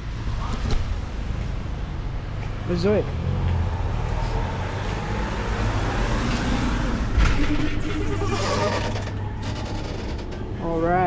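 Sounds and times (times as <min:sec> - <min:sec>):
vehicle engine passing by: 0:02.6 - 0:09.5.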